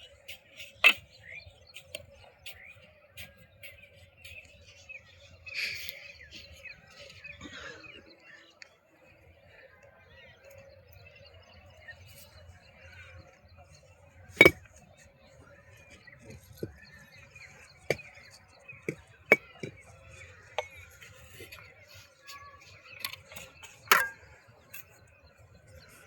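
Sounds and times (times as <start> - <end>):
hard objects clinking and knocking: 14.3 - 14.7, 18.8 - 19.9.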